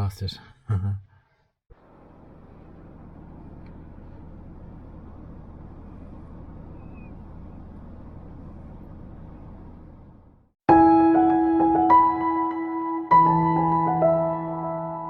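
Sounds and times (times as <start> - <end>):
van engine humming: 1.7 - 10.6.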